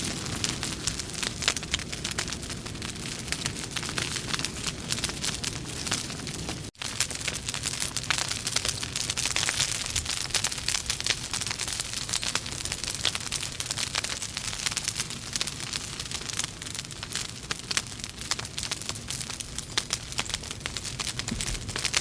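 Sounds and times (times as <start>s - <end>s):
fire crackling with pops: 0.0s - 22.0s.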